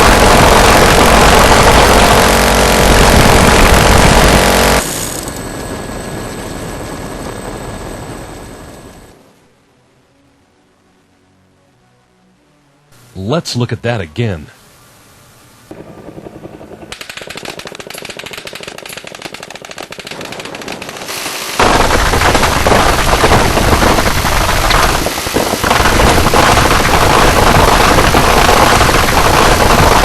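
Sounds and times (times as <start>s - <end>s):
gatling gun firing continuous burst: 0.0s - 5.2s, 15.7s - 30.0s.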